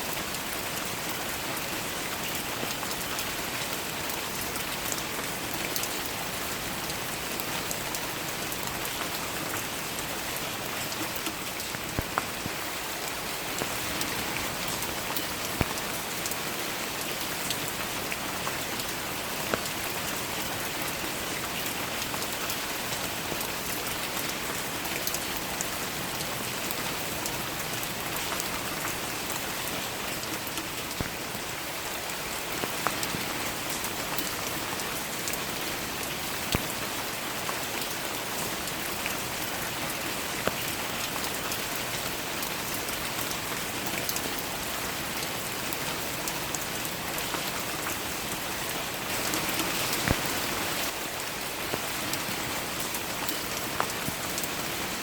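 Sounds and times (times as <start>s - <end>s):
steady rain: 0.0s - 55.0s
raindrops tapping close by: 0.2s - 55.0s.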